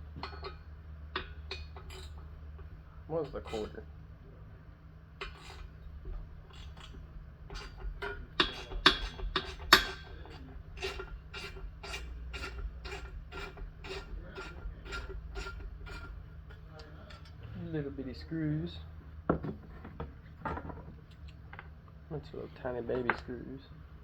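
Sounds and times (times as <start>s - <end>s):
metal clanks: 5.2s - 17.4s.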